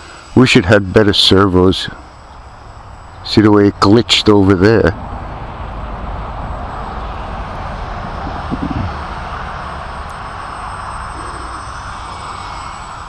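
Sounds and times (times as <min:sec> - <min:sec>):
wind rumble on microphone: 0:05.0 - 0:10.5
model airplane motor whine: 0:06.4 - 0:13.0.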